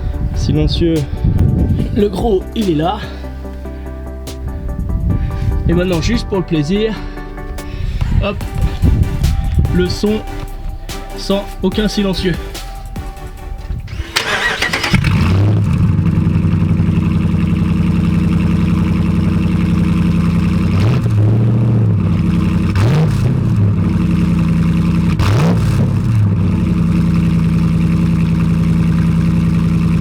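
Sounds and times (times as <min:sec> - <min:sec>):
straight exhaust engine idling: 0:00.0 - 0:30.0
engine revving: 0:08.4 - 0:30.0.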